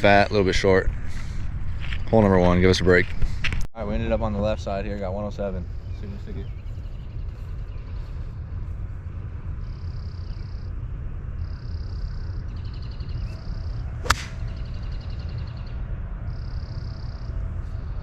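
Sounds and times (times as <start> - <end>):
steady low rumble: 0.0 - 18.0
golf club striking ball: 14.0 - 14.8.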